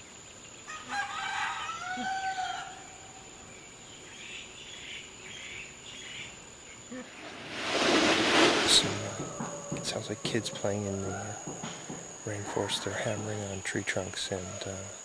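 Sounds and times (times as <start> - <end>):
insect drone: 0.0 - 15.0
rooster crowing: 0.7 - 3.0, 8.8 - 11.6.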